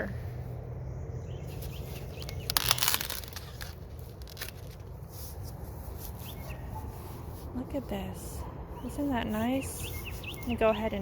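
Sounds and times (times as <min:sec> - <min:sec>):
corn stalks rustling and crackling: 0:01.5 - 0:06.4.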